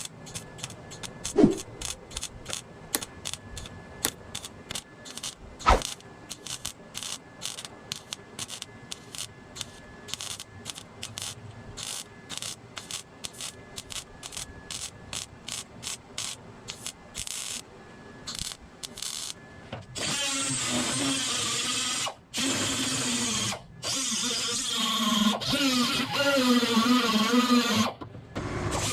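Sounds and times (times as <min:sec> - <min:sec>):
power drill running: 0:20.0 - 0:28.9.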